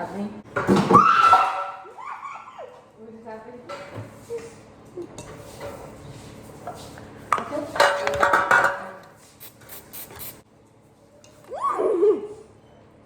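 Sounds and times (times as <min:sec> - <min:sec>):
kitchenware clattering: 0:03.7 - 0:04.2, 0:06.7 - 0:09.1.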